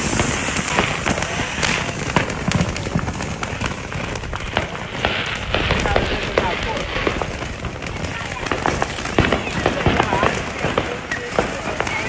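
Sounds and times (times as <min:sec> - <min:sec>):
fireworks popping and crackling: 0:00.0 - 0:12.0.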